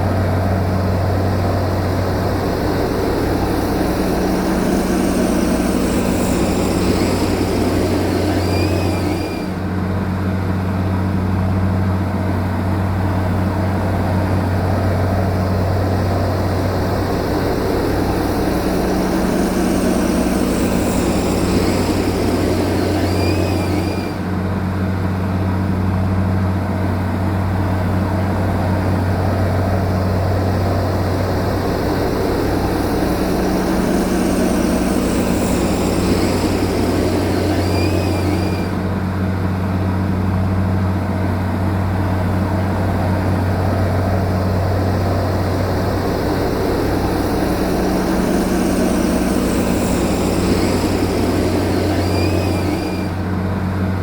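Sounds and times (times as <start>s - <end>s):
bulldozer diesel engine running: 0.0s - 54.0s
faint short squeak: 4.8s - 9.6s, 34.1s - 38.9s, 48.3s - 53.2s.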